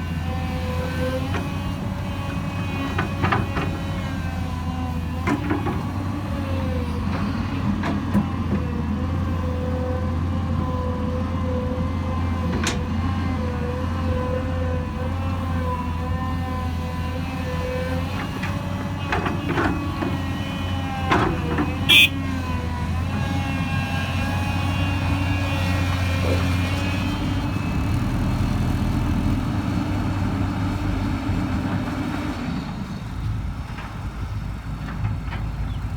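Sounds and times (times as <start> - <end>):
diesel engine running: 0.0 - 35.9.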